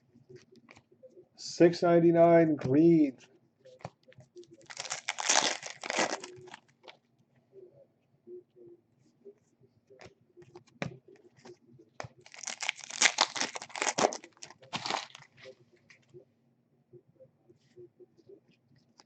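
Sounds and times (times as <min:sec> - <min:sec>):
foil wrapper tearing and crinkling: 0:04.6 - 0:06.6, 0:12.3 - 0:15.3.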